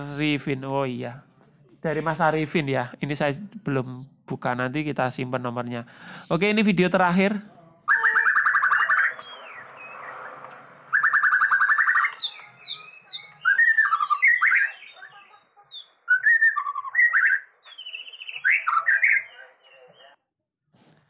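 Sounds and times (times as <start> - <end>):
bird singing: 7.9 - 20.2.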